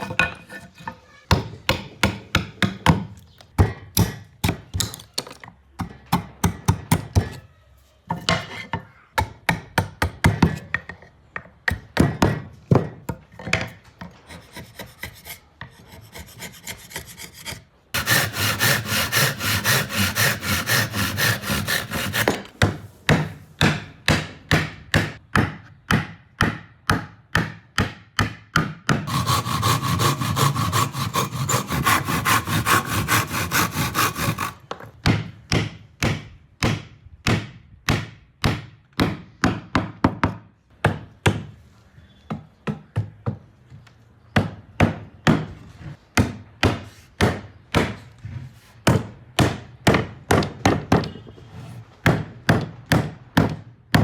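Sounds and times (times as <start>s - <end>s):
hand tool strokes on wood: 15.9s - 22.4s, 29.1s - 34.6s.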